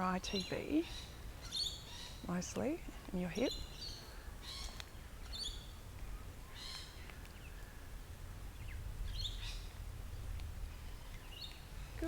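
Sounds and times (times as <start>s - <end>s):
birds chirping: 0.0s - 7.9s
low background rumble: 0.0s - 12.0s.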